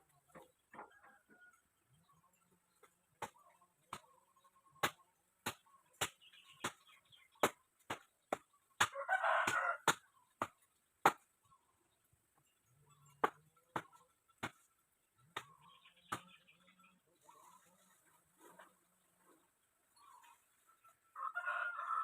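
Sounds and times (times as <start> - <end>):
rooster crowing: 8.9 - 9.8, 21.2 - 22.0.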